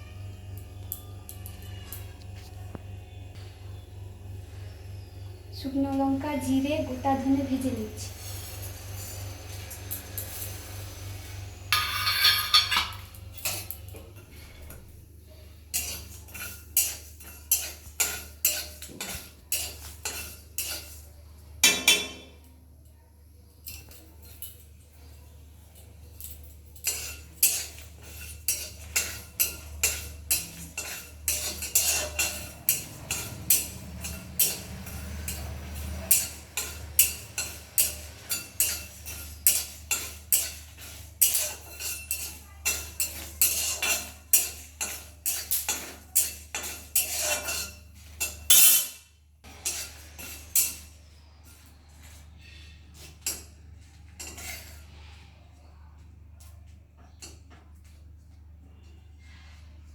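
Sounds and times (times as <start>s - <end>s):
steady low hum: 0.0s - 18.9s
spices frying: 0.0s - 22.0s, 22.8s - 54.8s
spatula scraping a pan: 7.8s - 14.9s, 15.5s - 21.1s, 26.6s - 55.2s.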